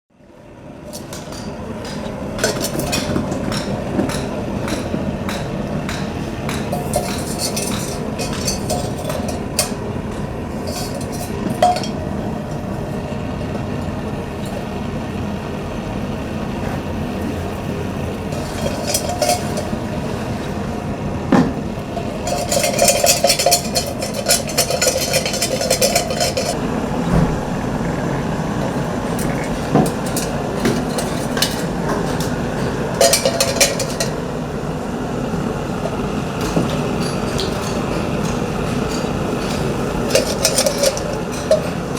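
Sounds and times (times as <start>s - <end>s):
rapid light metal hits on copper: 1.3s - 12.0s.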